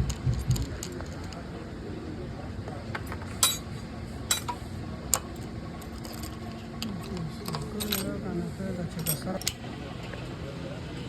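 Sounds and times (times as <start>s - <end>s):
steady low hum: 0.0s - 11.0s
sharp metallic clinks: 3.4s - 3.7s.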